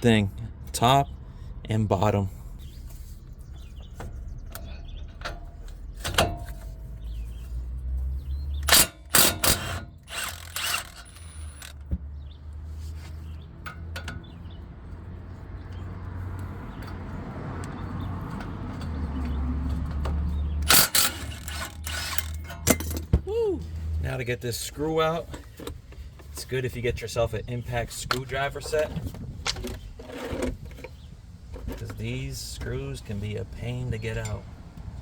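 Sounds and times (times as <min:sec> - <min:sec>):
metal tools clinking: 0:08.6 - 0:11.8, 0:20.6 - 0:23.1
ratchet wrench clicking: 0:08.6 - 0:11.8, 0:20.6 - 0:22.7.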